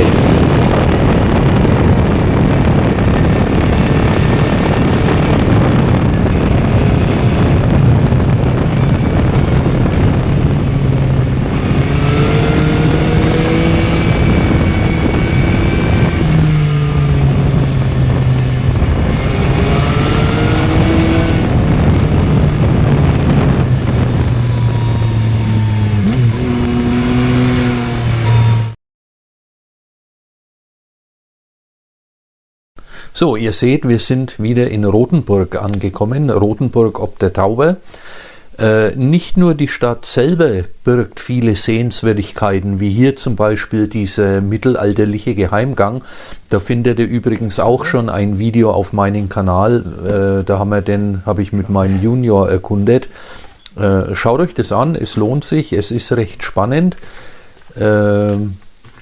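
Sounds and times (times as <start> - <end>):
motorcycle engine revving: 0.0 - 28.8.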